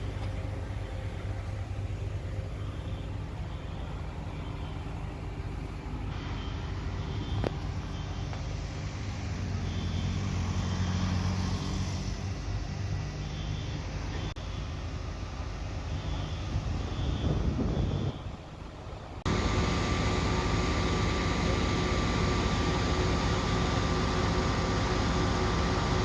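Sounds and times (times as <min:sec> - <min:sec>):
diesel engine idling: 0:14.4 - 0:26.0.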